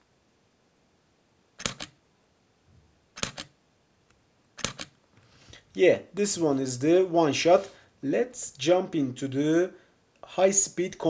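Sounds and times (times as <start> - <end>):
camera shutter clicks: 1.6 - 2.0, 3.2 - 3.6, 4.6 - 5.0.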